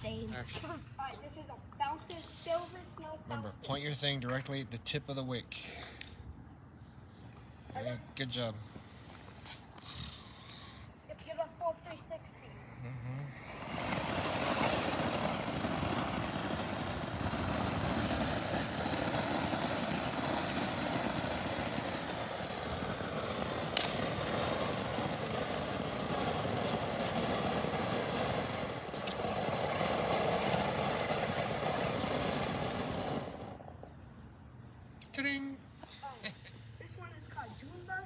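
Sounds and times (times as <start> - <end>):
firework fountain hissing: 7.1 - 33.8.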